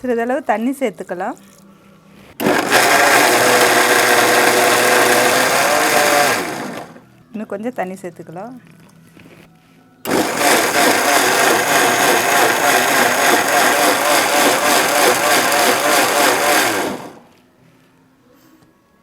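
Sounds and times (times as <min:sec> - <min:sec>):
mixer grinder motor grinding: 0:02.3 - 0:07.0, 0:10.1 - 0:17.4.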